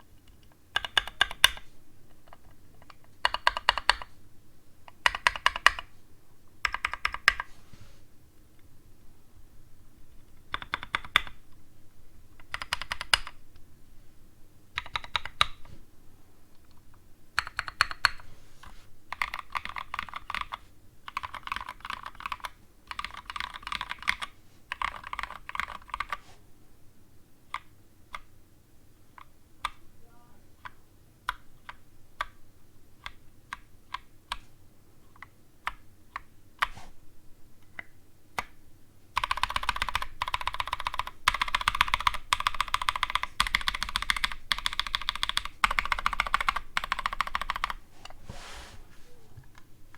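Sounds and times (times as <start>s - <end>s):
mechanical keyboard typing: 0.3s - 4.1s, 4.9s - 5.9s, 6.6s - 7.5s, 10.4s - 11.4s, 12.4s - 13.4s, 14.8s - 15.6s, 17.4s - 18.2s, 19.1s - 26.2s, 39.2s - 47.8s.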